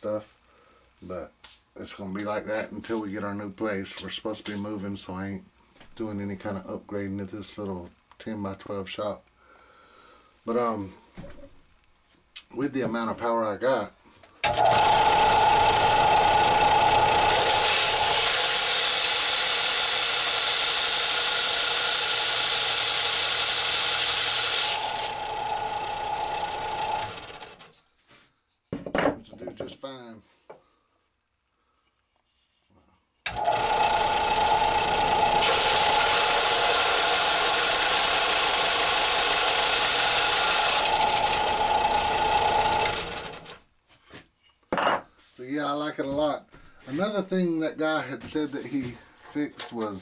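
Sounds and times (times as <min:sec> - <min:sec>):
sander grinding workpiece: 0:14.4 - 0:27.6, 0:33.3 - 0:43.6
sander motor whine: 0:14.4 - 0:27.6, 0:33.3 - 0:43.5.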